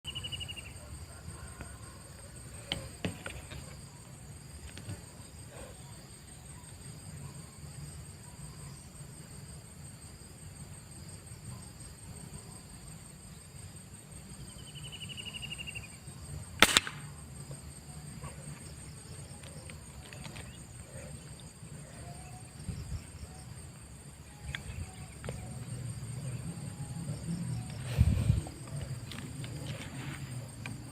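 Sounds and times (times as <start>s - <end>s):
insects buzzing: 0.0s - 30.9s
air rifle shot: 16.6s - 17.2s.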